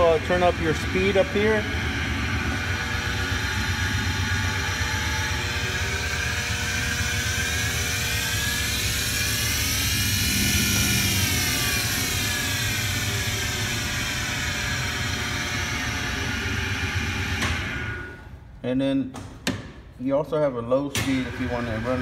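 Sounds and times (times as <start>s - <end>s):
lathe spindle drive whining: 0.0s - 18.2s
lathe running with steady hum: 0.0s - 18.3s, 21.0s - 22.0s.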